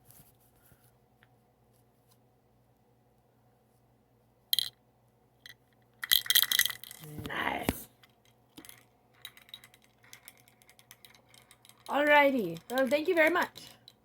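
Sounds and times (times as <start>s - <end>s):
fidget toy clicking and rattling: 5.4s - 14.0s.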